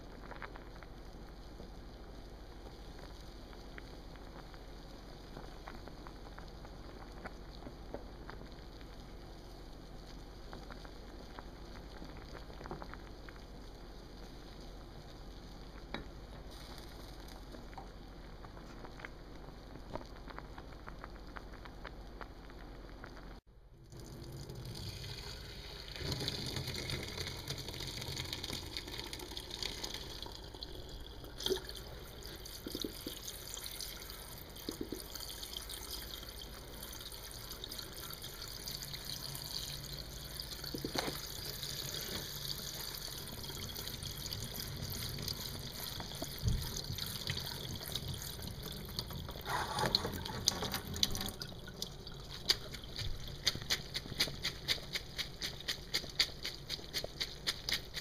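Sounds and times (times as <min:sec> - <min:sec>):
water running into sink: 0:23.8 - 0:53.5.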